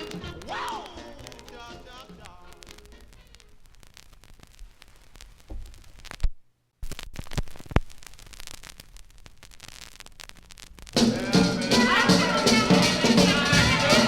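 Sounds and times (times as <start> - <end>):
record clicks and pops: 0.0 - 11.0
record surface hiss and crackle: 0.0 - 14.0.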